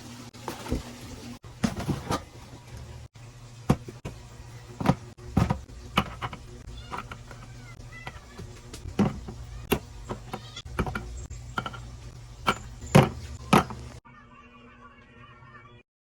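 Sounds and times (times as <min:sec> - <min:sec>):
containers knocking on fridge shelves: 0:03.6 - 0:14.0.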